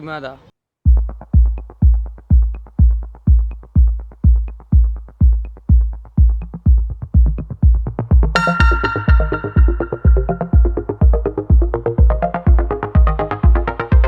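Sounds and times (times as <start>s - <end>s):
drum machine kick: 0.9s - 14.0s
electronic dance music: 1.0s - 14.0s
bright synth chord: 8.4s - 11.6s.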